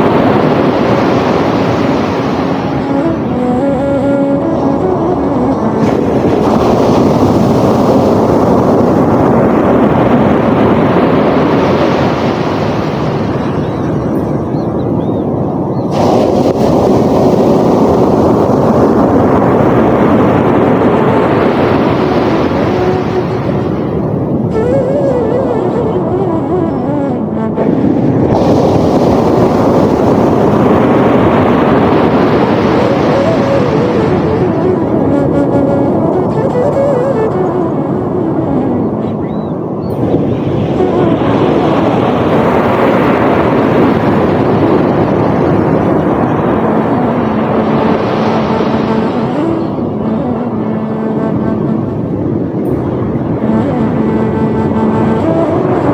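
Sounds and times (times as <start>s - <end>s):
sea surf washing: 0.0s - 55.9s
wind rumbling on microphone: 0.0s - 55.9s
soft slow melody: 2.3s - 9.3s, 14.0s - 15.4s, 20.7s - 29.6s, 31.3s - 43.7s, 46.2s - 55.9s
soft music: 2.4s - 9.2s, 14.1s - 14.7s, 21.2s - 29.5s, 32.6s - 43.1s, 46.4s - 55.9s.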